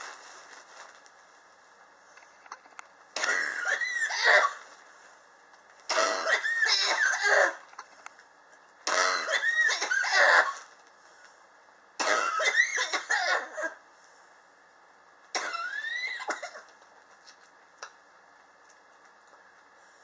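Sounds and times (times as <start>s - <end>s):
person coughing: 3.2s - 4.6s, 5.9s - 7.6s, 12.0s - 13.8s.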